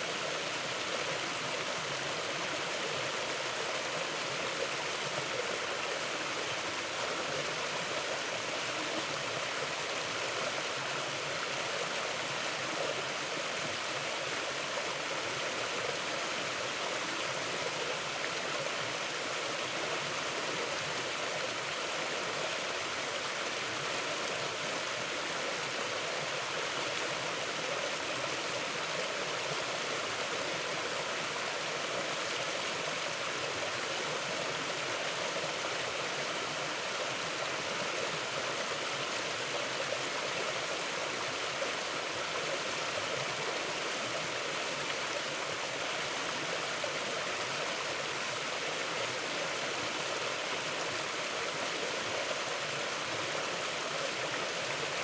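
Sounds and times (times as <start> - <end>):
creek flowing over stones: 0.0 - 55.0.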